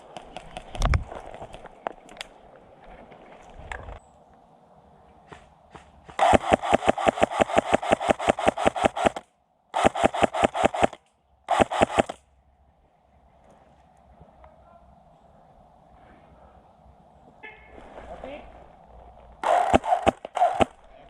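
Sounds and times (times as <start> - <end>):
airsoft rifle firing: 6.1 - 12.2, 19.4 - 20.9.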